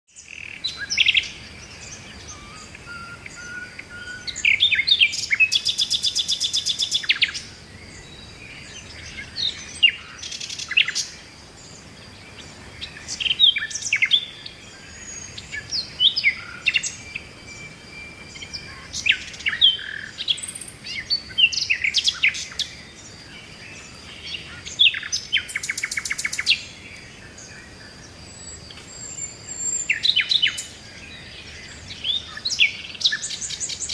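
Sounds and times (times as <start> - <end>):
birds chirping: 0.1 - 33.9.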